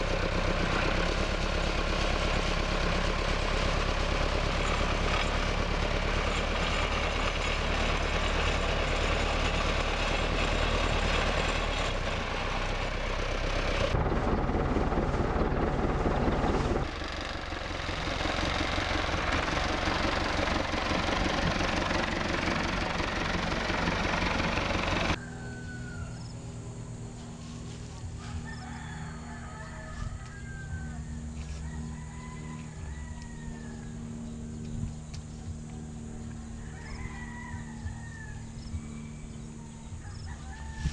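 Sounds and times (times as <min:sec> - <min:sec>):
vehicle engine running: 0:00.0 - 0:40.9
rooster crowing: 0:25.1 - 0:26.4, 0:28.2 - 0:34.2, 0:35.7 - 0:40.9.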